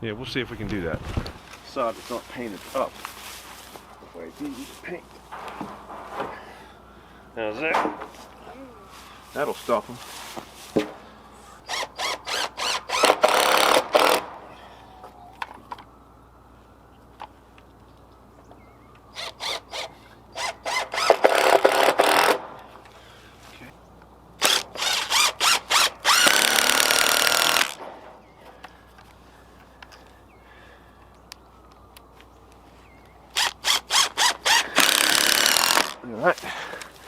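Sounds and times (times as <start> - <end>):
power drill driving screws: 11.6 - 14.4, 19.1 - 22.5, 24.4 - 27.9, 33.3 - 36.0.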